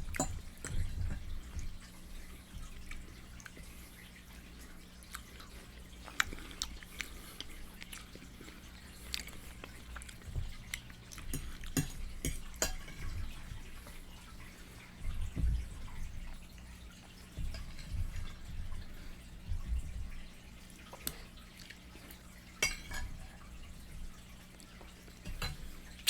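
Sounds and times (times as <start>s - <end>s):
wet chewing and lip smacking: 4.6s - 12.6s, 20.1s - 22.2s
soft low thumps: 15.0s - 20.4s.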